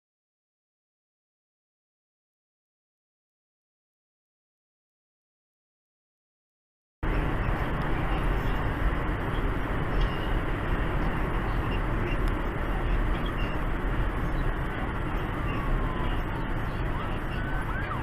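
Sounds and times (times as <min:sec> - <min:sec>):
roadside traffic rumble: 0:07.0 - 0:18.0.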